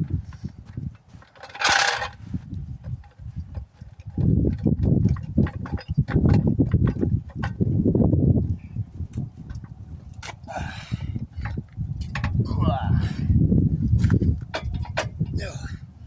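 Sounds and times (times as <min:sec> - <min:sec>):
metal knocks and clicks: 0:00.6 - 0:02.2, 0:02.8 - 0:07.8, 0:11.4 - 0:12.4, 0:14.0 - 0:15.4.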